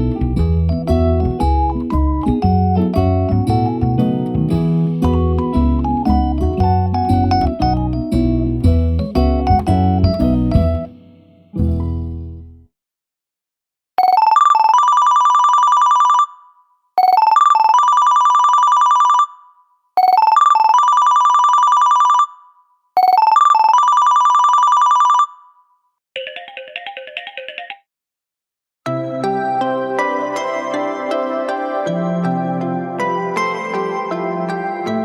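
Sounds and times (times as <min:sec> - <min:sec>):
phone ringtone warbling: 0:14.0 - 0:27.8.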